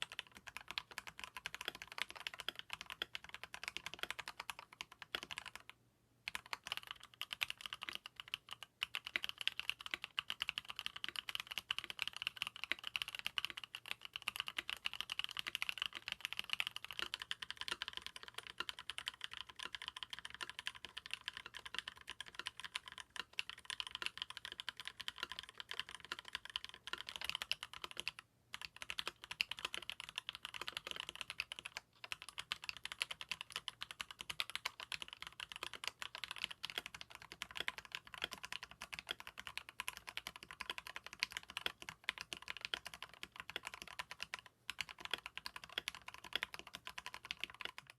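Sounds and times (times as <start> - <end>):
mechanical keyboard typing: 0.0 - 5.7, 6.3 - 47.9.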